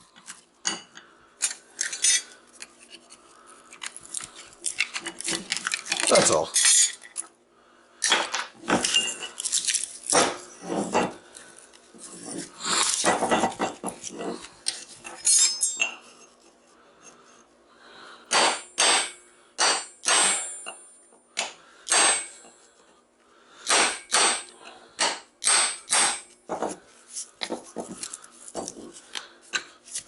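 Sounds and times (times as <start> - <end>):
metal clattering and scraping: 8.6 - 11.2
ringing metal on metal strikes: 15.2 - 16.0, 18.3 - 21.1.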